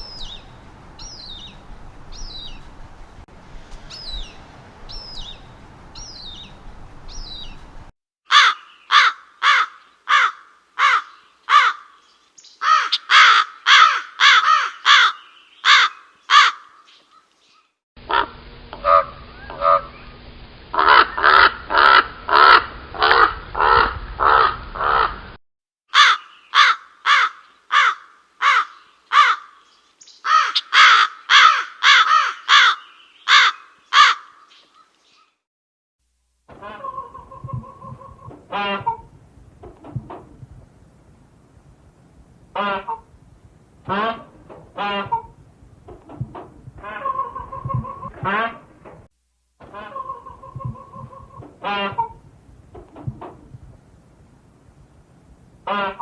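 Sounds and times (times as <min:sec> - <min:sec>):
bird high thin chirps: 0:00.0 - 0:02.9, 0:03.6 - 0:07.8
bird harsh cawing calls: 0:00.0 - 0:12.0, 0:12.6 - 0:16.8, 0:20.8 - 0:25.2, 0:25.9 - 0:34.6, 0:36.5 - 0:39.1, 0:42.6 - 0:43.1, 0:43.9 - 0:49.0, 0:49.6 - 0:52.3
background noise: 0:00.0 - 0:25.3, 0:25.9 - 0:35.4, 0:36.0 - 0:56.0.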